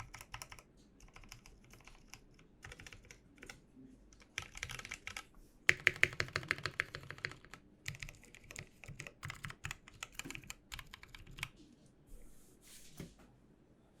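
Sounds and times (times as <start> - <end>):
mechanical keyboard typing: 0.0 - 3.6, 4.2 - 11.6.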